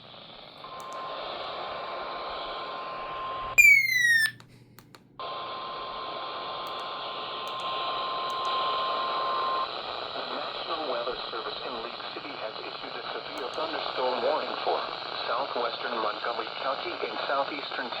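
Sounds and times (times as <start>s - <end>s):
falling electronic tone: 3.6s - 4.3s
steady high alarm tone: 3.6s - 4.4s.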